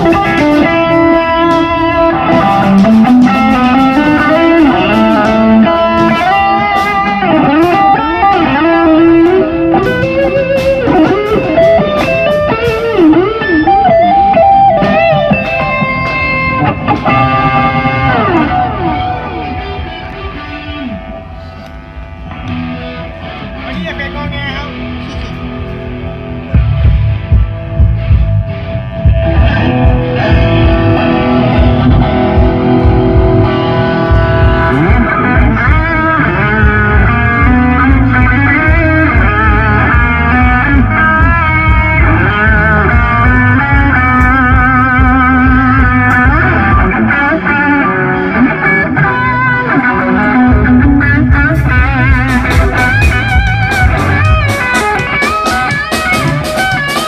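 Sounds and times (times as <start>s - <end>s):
electric guitar melodic lines: 0.0s - 57.0s
live band playing: 0.0s - 57.0s.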